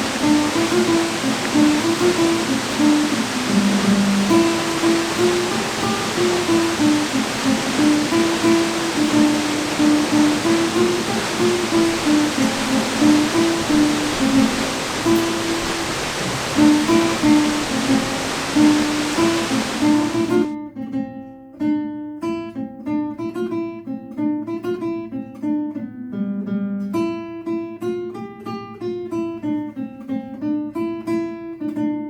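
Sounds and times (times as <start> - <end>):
waterfall noise: 0.0 - 20.6
plucked string music: 0.0 - 26.5.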